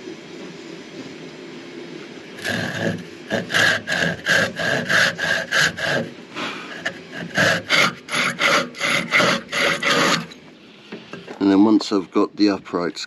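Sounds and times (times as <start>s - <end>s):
hand saw cutting wood: 2.4s - 10.4s.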